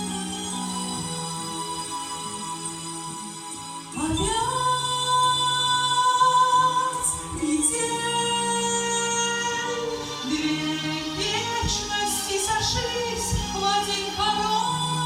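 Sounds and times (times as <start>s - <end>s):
woman singing: 3.9s - 15.0s.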